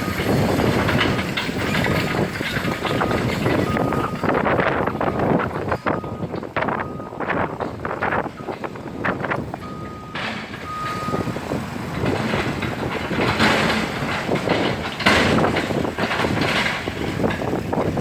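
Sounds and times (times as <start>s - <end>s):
excavator engine and hydraulics: 0.0s - 18.0s.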